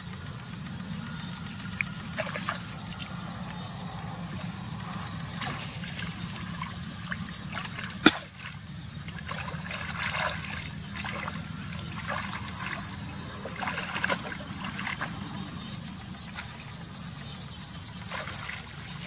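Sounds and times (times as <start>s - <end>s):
steady low hum: 0.0s - 19.0s
water splashing and trickling: 0.0s - 19.0s.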